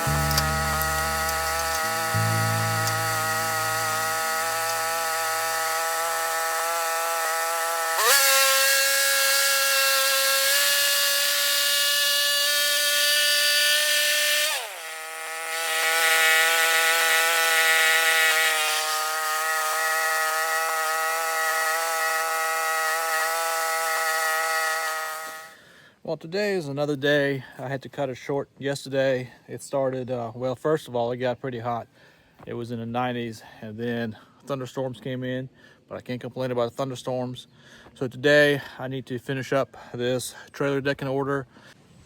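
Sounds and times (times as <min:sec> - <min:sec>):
band blade sawing log: 0:00.0 - 0:11.5, 0:12.5 - 0:25.5
small gas engine running: 0:00.0 - 0:25.6.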